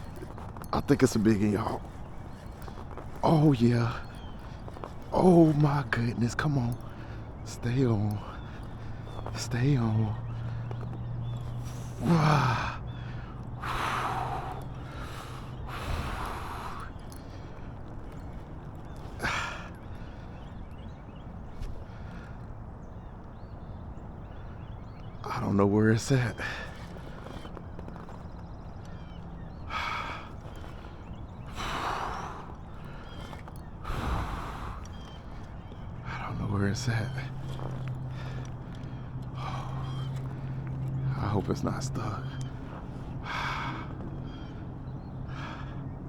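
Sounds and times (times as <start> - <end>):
man breathing hard: 11.4 - 17.6, 29.6 - 30.9, 31.5 - 35.2, 42.7 - 44.6, 45.2 - 45.9
man grunting: 12.0 - 12.8.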